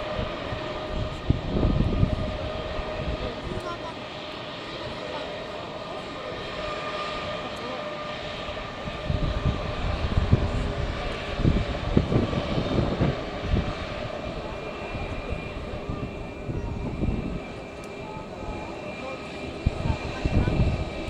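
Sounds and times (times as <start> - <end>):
wind buffeting microphone: 0.0 - 3.6, 8.1 - 21.0
jet engines whining: 0.0 - 21.0.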